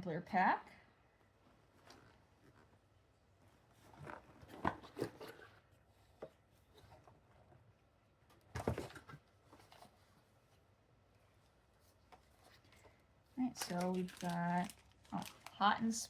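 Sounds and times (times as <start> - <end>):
plastic packaging crinkling: 13.5 - 16.0.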